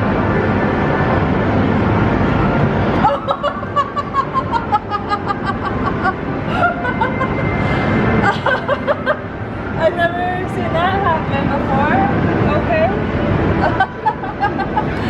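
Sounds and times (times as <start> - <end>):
background music: 0.0 - 15.0
person laughing and giggling: 3.0 - 9.4, 13.6 - 15.0.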